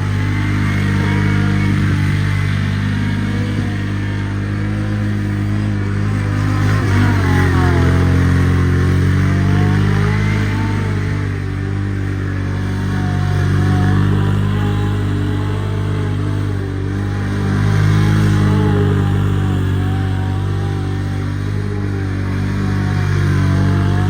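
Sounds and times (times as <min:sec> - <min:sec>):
vehicle engine with whining tone: 0:00.0 - 0:24.0.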